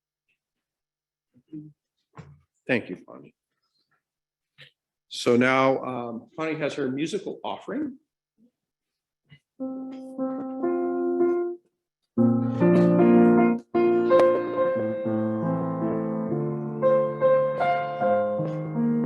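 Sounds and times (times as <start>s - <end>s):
piano playing: 9.6s - 11.6s, 12.2s - 19.0s.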